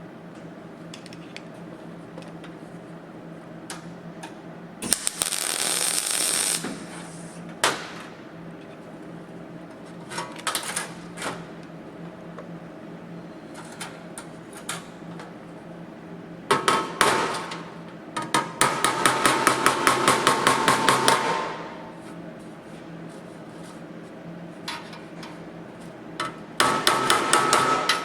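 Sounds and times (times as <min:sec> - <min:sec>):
welding crackle: 0:04.8 - 0:07.4.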